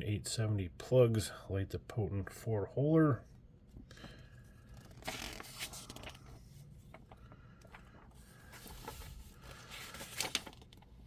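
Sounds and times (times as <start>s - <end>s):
paper rustling: 4.7s - 11.0s.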